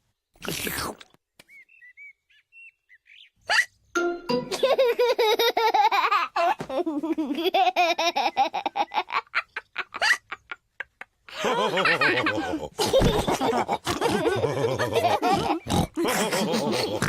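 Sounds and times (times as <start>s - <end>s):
cartoon characters laughing: 4.5s - 17.0s.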